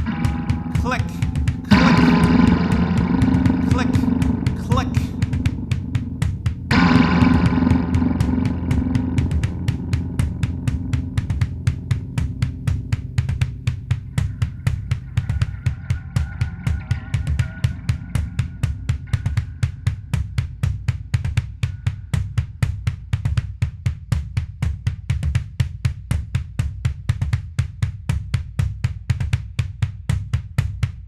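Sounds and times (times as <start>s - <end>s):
heavy bass: 0.0s - 21.1s
drum kit beat: 0.0s - 30.6s.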